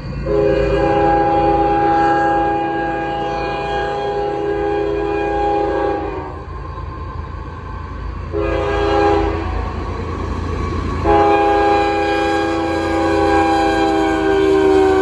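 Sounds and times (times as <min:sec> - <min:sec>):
low train rumble: 0:00.0 - 0:15.0
locomotive air horn: 0:00.2 - 0:06.5, 0:08.3 - 0:09.8, 0:11.0 - 0:15.0.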